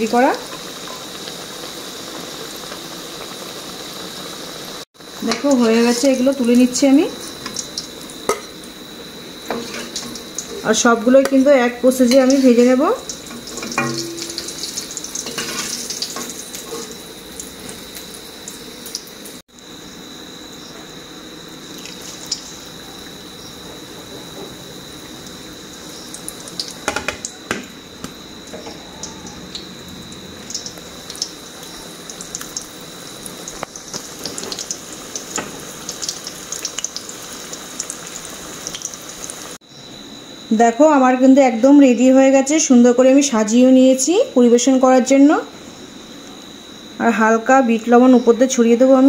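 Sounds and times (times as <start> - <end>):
food sizzling in oil: 0.0 - 23.9, 24.6 - 39.7.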